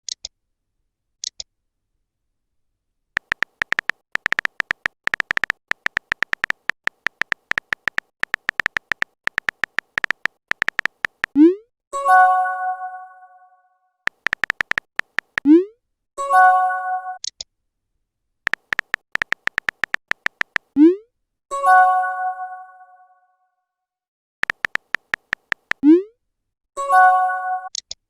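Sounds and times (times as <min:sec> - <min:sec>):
phone typing clicks: 0:03.2 - 0:11.4, 0:14.1 - 0:15.5, 0:18.5 - 0:20.8, 0:24.4 - 0:25.8.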